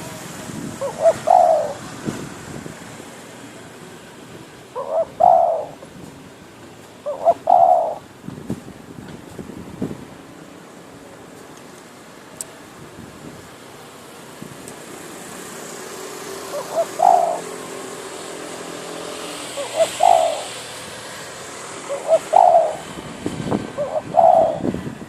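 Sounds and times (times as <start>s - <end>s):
dove cooing: 0.8s - 1.9s, 4.7s - 5.8s, 7.0s - 8.0s, 16.5s - 17.6s, 19.4s - 20.7s, 21.8s - 22.9s, 23.7s - 24.8s.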